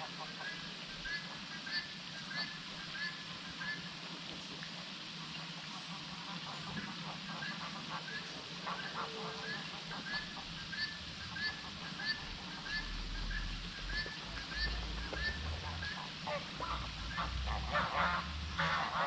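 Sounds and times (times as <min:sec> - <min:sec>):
bird honking nasal call: 0:08.0 - 0:19.0.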